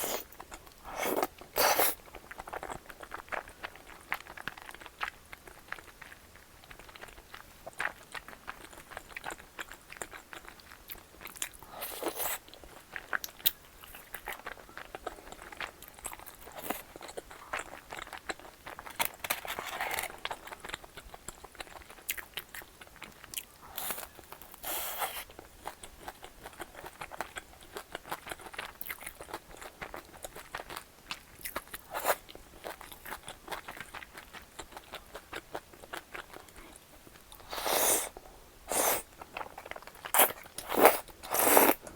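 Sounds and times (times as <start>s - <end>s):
person chewing and biting: 0.0s - 3.5s, 37.3s - 41.9s.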